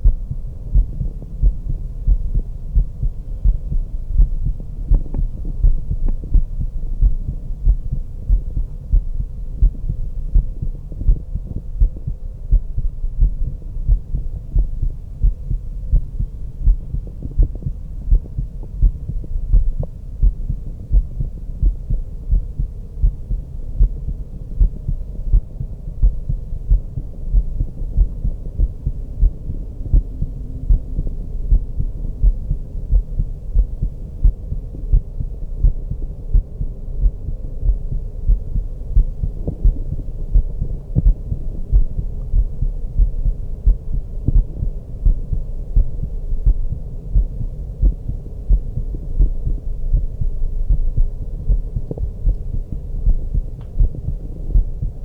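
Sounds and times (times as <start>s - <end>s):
faint steady hum: 0.0s - 55.0s
heartbeat thumps: 0.0s - 55.0s.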